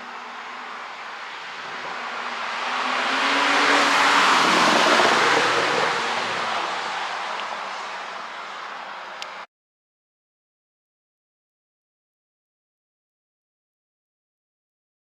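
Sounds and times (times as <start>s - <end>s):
car driving past: 0.0s - 9.2s.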